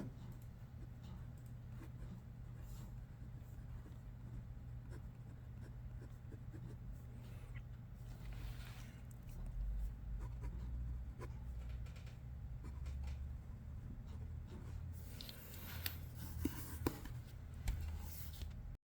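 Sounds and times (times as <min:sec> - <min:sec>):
pencil scratching on paper: 0:00.0 - 0:07.5, 0:09.8 - 0:11.6, 0:13.8 - 0:17.2
low room hum: 0:00.0 - 0:18.8.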